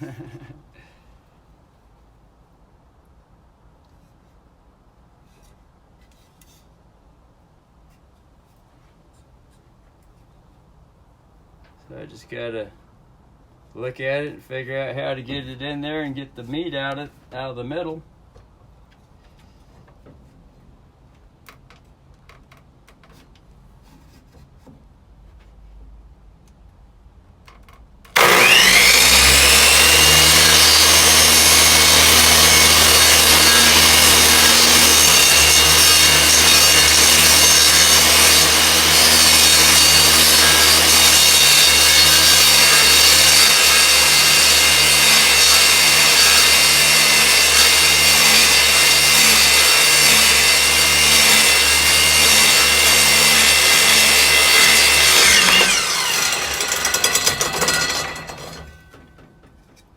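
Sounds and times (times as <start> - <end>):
electric power saw motor: 28.1 - 58.8.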